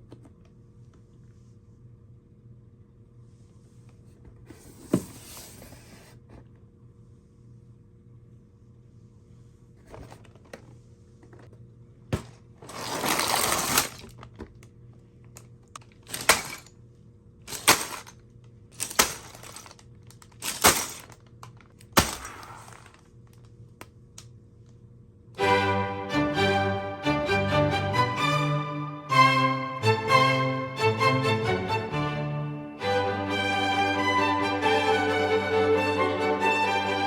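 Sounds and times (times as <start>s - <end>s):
packaging rustling: 12.6s - 14.4s, 15.9s - 16.7s, 17.5s - 18.1s, 18.8s - 23.1s.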